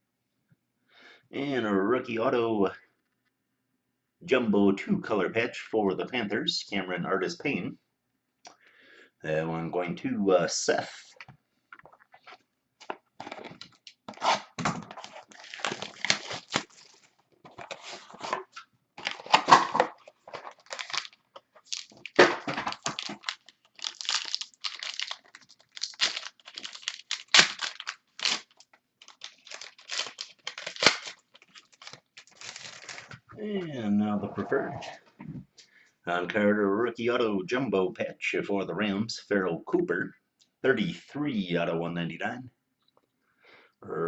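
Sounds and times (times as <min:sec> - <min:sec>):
plastic wrapping tearing and crinkling: 0:13.2 - 0:33.2.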